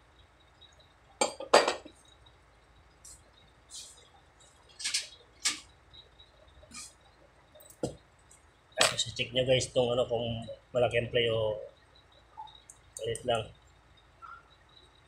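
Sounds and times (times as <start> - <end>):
metal tools clinking: 4.7 - 5.6.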